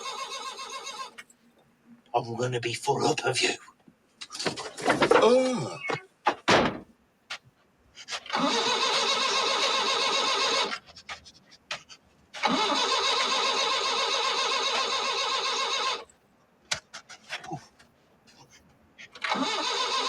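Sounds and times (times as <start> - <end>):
van engine starter cranking: 8.3 - 10.7, 12.4 - 16.1, 19.2 - 20.0.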